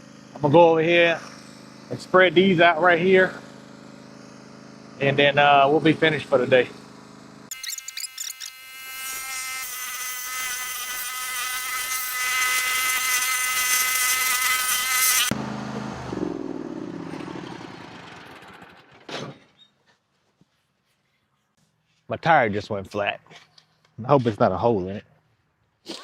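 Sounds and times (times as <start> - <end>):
small engine whining: 0.0 - 11.0, 11.7 - 19.7.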